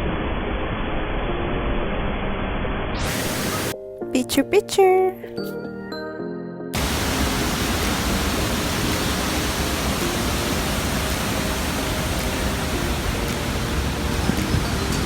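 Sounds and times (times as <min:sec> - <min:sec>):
waterfall rushing: 0:03.0 - 0:03.7, 0:06.8 - 0:15.0.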